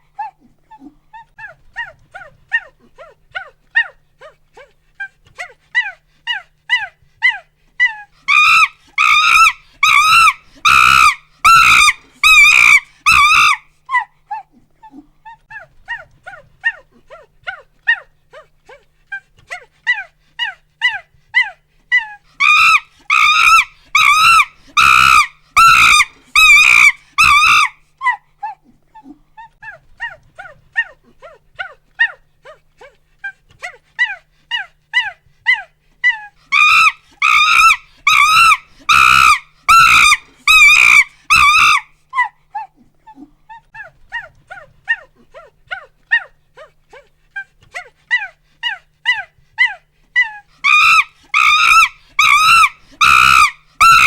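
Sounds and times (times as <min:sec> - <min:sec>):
monkey hooting and screaming: 0:05.8 - 0:14.1, 0:19.9 - 0:28.2, 0:34.0 - 0:42.3, 0:47.8 - 0:54.0.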